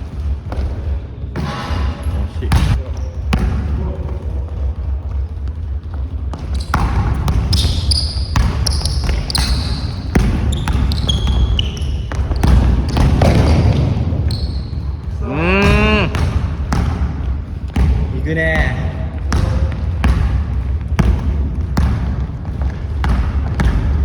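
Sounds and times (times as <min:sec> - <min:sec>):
basketball bouncing on gym floor: 0:00.0 - 0:24.0
sneaker squeaks: 0:01.4 - 0:16.8.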